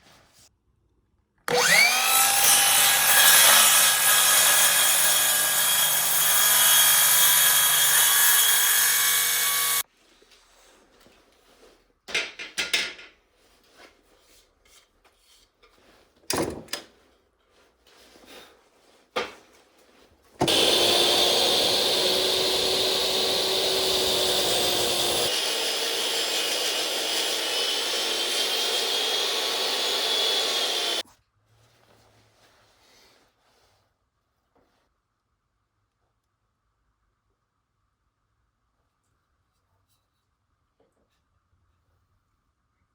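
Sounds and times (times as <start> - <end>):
power tool cutting wood: 1.5 - 9.8, 20.4 - 31.0.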